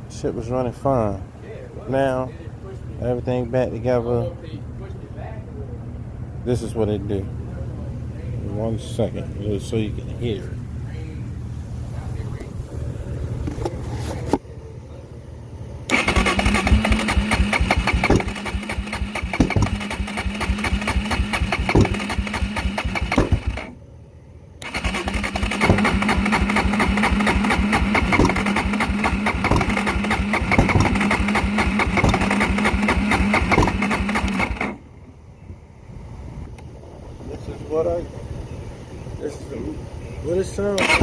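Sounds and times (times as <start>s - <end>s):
engine cranking on starter: 15.8s - 23.8s, 24.6s - 34.8s, 40.6s - 41.0s.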